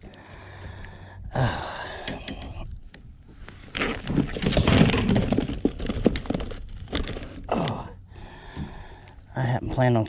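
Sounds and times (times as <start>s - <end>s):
rustling: 3.4s - 7.5s
knocks and clatter: 4.0s - 7.5s.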